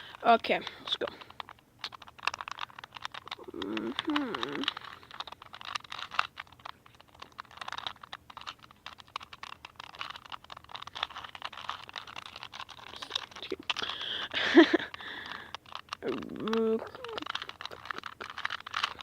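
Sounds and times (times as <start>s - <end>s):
puzzle cube plastic clicks: 0.0s - 19.0s.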